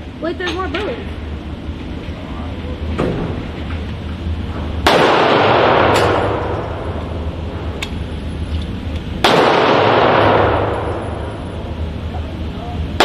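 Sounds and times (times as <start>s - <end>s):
loud echoing gunshots: 4.6s - 7.8s, 9.2s - 11.7s
faint gunshots: 4.8s - 6.8s, 9.2s - 11.0s.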